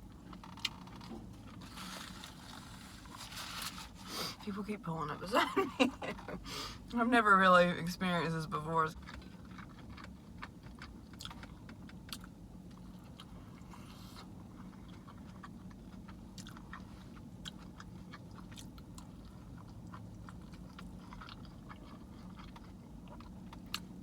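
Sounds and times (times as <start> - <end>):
chewing and biting food: 0.0 - 4.1, 8.9 - 24.0
steady low hum: 0.0 - 24.0.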